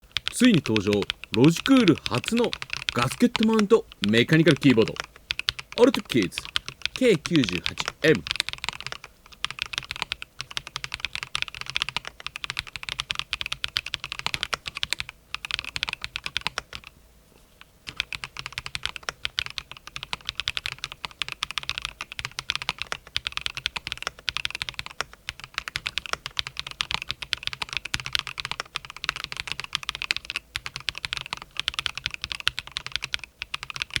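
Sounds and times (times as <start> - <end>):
mechanical keyboard typing: 0.1 - 16.9, 17.9 - 34.0.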